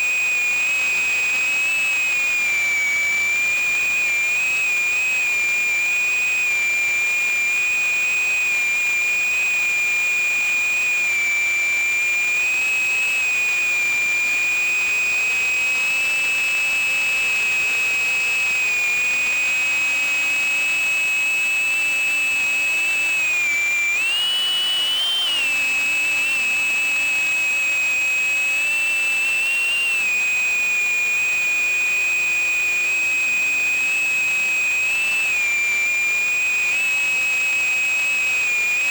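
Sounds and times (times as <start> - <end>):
drone motors whining: 21.4 - 30.2, 33.4 - 35.8.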